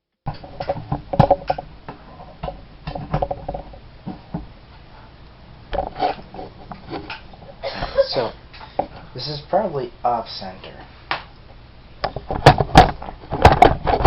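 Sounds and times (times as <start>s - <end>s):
clicks taps and knocks: 0.3s - 4.5s.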